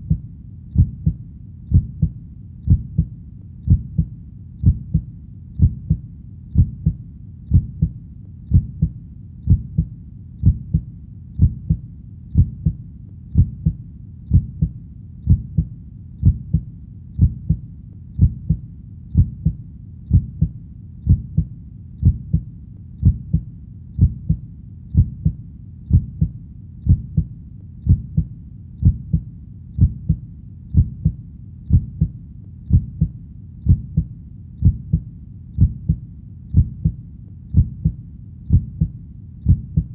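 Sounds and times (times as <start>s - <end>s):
heartbeat double thump: 0.8s - 3.1s, 3.7s - 6.0s, 6.6s - 11.8s, 12.4s - 12.8s, 13.4s - 17.6s, 18.2s - 18.6s, 19.2s - 20.5s, 21.1s - 24.4s, 25.0s - 26.3s, 26.9s - 27.3s, 27.9s - 29.2s, 29.8s - 30.2s, 30.8s - 33.1s, 33.7s - 35.0s, 35.6s - 36.0s, 36.6s - 37.0s, 37.6s - 38.9s, 39.5s - 39.9s.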